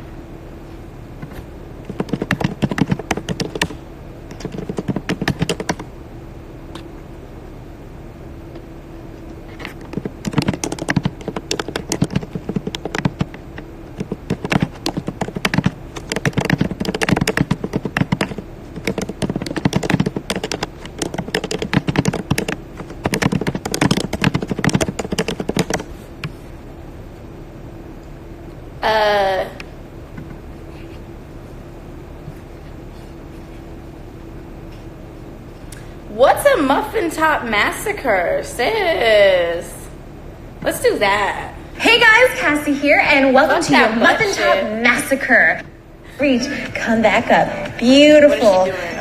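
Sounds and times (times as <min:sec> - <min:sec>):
rapid keyboard typing: 0:01.8 - 0:05.9, 0:09.5 - 0:26.4.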